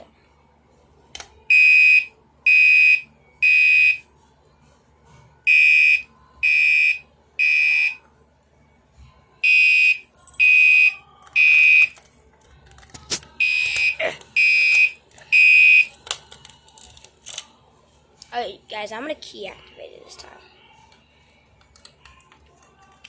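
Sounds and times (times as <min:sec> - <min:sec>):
fire alarm horn beeping: 0:01.5 - 0:04.1, 0:05.5 - 0:08.0, 0:09.4 - 0:12.0, 0:13.4 - 0:16.0.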